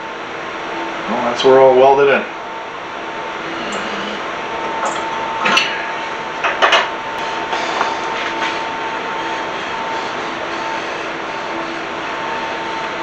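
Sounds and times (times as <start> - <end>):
steady background hum: 0.0 - 13.0.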